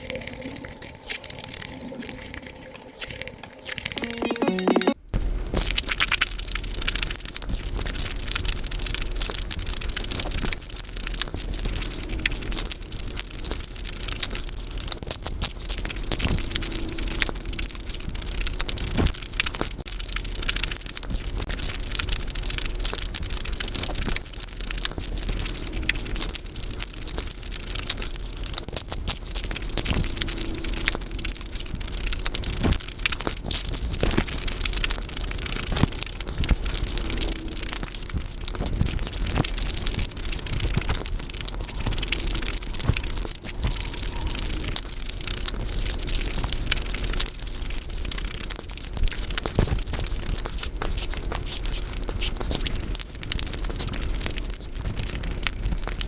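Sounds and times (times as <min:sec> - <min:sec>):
rapid chewing and smacking: 0:17.6 - 0:56.0.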